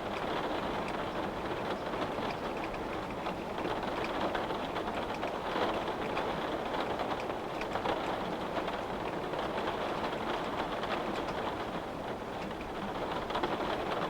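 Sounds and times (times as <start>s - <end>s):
rain pattering on window: 0.0s - 14.0s.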